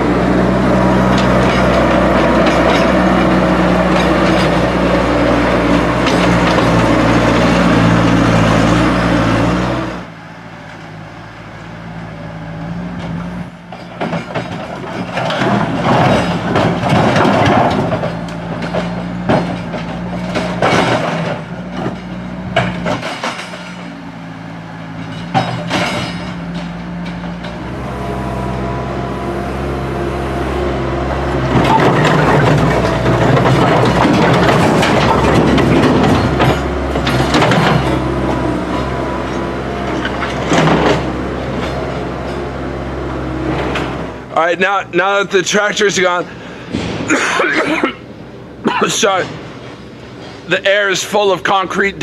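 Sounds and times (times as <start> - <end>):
diesel engine running: 0.0 - 52.0
clanks and knocks: 0.8 - 8.8, 12.9 - 28.0, 31.3 - 42.6, 46.7 - 47.9, 48.7 - 50.5.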